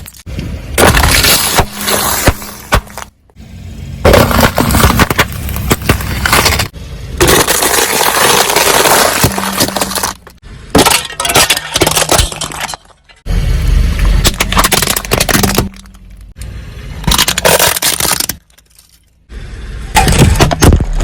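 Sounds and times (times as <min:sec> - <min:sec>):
low hum: 0:00.0 - 0:07.3, 0:12.0 - 0:20.4.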